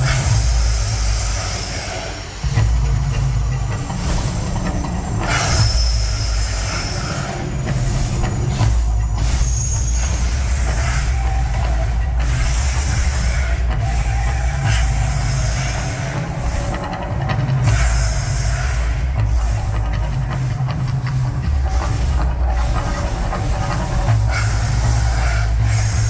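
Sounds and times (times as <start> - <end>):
deep rumble with hissing surges: 0.0 - 26.0.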